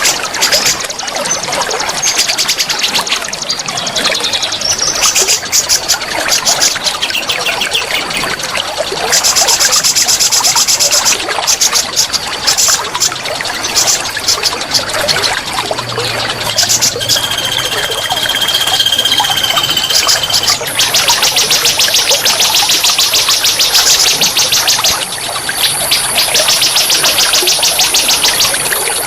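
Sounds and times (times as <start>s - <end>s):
songbirds trilling: 0.0s - 29.0s
waterfall rushing: 11.9s - 29.0s
bird whistling high note: 16.6s - 22.7s.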